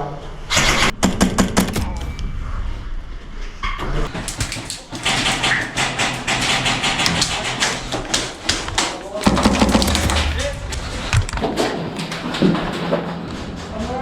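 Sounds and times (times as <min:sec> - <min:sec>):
airsoft gunfire: 0:04.1 - 0:11.6.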